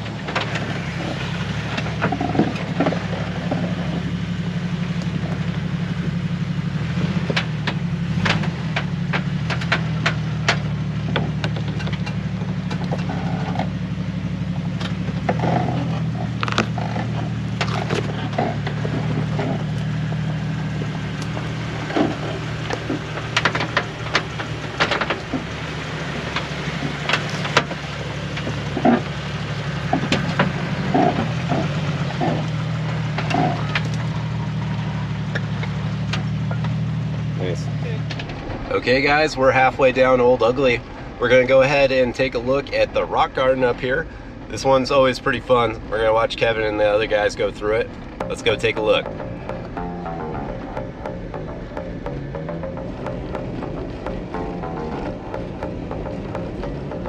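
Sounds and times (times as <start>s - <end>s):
engine running at low revs: 0.0s - 57.0s
sharp knocks and clicks: 7.2s - 13.7s, 14.8s - 29.2s, 29.9s - 34.2s, 48.1s - 57.0s.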